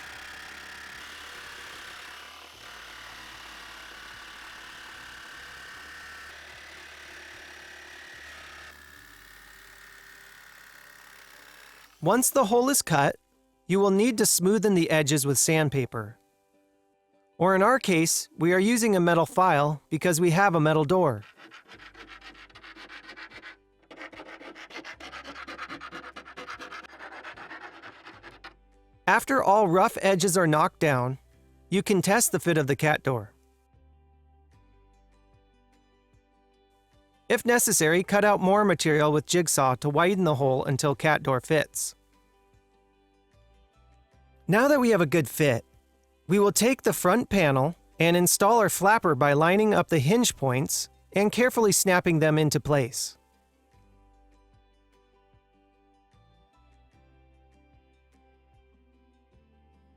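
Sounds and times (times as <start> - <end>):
electric jigsaw cutting metal: 0.0 - 12.0, 21.2 - 28.6
metal file rasping on metal: 0.0 - 12.0, 21.2 - 28.6.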